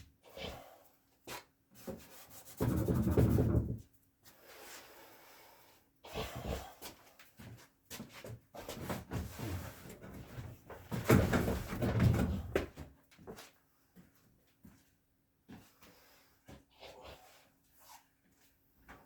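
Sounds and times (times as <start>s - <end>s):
rubbing on wooden furniture: 1.8s - 3.8s.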